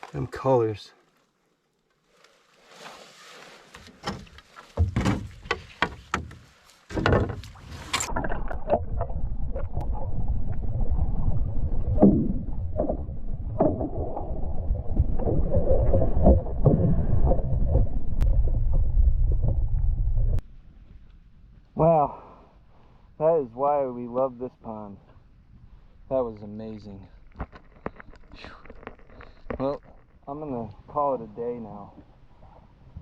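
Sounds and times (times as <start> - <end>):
canoe knocks and splashing: 3.7 - 9.7
steady low rumble: 8.2 - 21.8.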